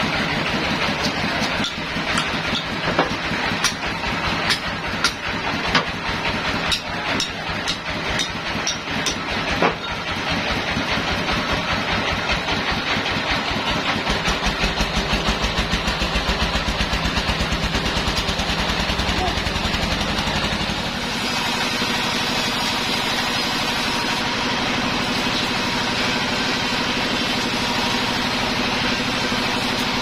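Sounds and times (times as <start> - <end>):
engine running: 0.0 - 30.0
knocks and clatter: 1.0 - 10.2.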